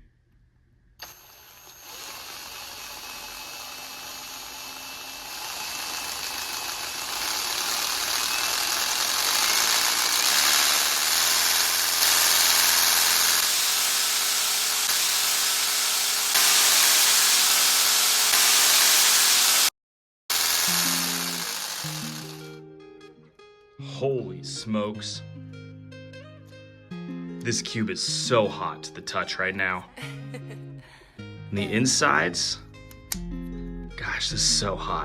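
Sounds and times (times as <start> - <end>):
power drill whirring: 1.0 - 19.7, 20.3 - 22.5.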